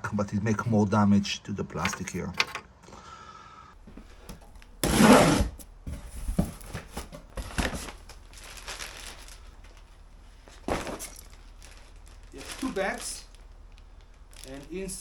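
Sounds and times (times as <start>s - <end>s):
gear rustling: 6.3s - 15.0s.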